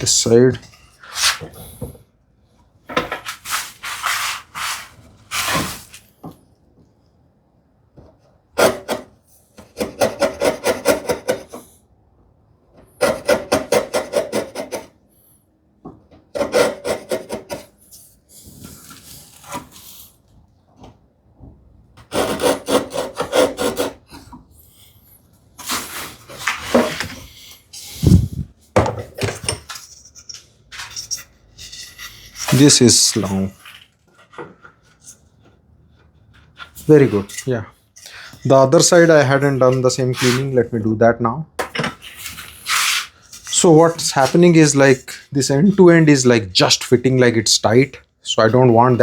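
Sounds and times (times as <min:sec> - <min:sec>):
hand tool rasping wood: 0:08.6 - 0:11.6, 0:13.0 - 0:14.9, 0:16.4 - 0:17.7, 0:22.0 - 0:24.1, 0:30.8 - 0:33.5, 0:39.4 - 0:40.6.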